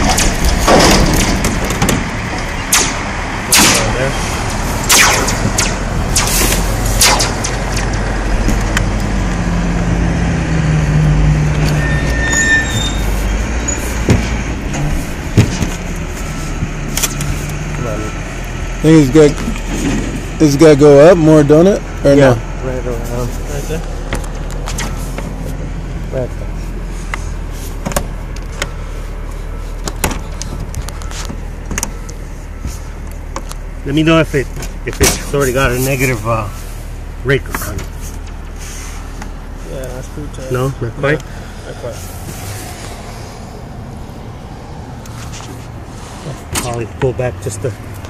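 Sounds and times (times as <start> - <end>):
sharp metal knocks: 0.0 - 4.0, 4.8 - 8.6.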